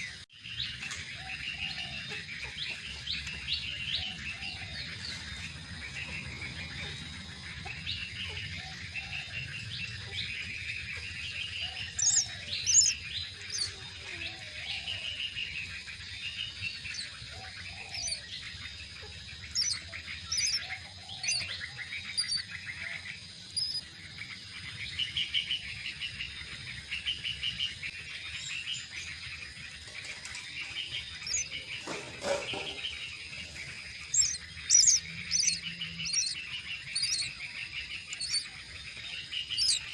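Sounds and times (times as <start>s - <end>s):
chicks chirping: 0.0s - 23.8s, 29.2s - 39.9s.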